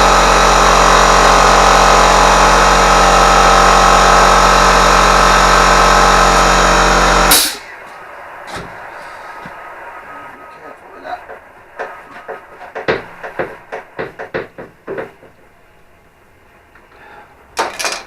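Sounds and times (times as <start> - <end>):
power tool motor running: 0.0 - 7.3.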